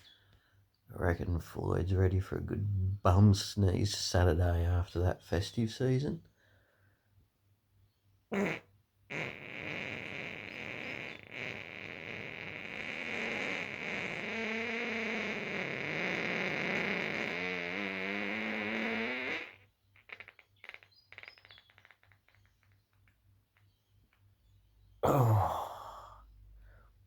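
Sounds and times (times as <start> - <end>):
long fart: 8.3 - 22.9, 25.0 - 26.2.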